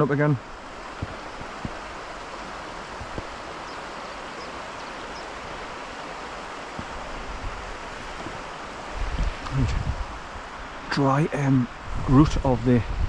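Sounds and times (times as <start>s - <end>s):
rushing water and waterfalls: 0.0s - 13.0s
footsteps on rock: 0.9s - 1.8s, 6.7s - 7.2s.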